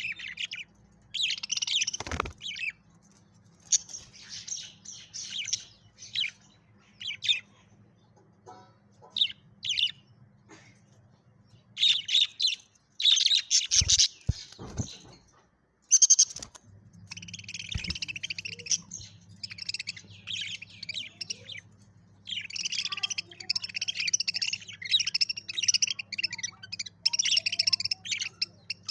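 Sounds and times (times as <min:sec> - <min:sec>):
budgerigars chirping: 0:00.0 - 0:02.8, 0:11.8 - 0:15.1, 0:15.9 - 0:16.5, 0:17.1 - 0:28.9
faint low hum: 0:00.0 - 0:28.9.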